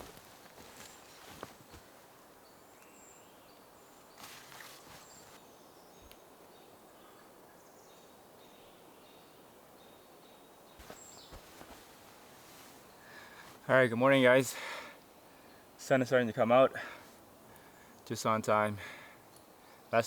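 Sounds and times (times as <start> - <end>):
soft rustles or clicks: 0.0 - 2.0, 4.2 - 5.4, 10.8 - 13.6
distant bird chirps: 10.8 - 11.8.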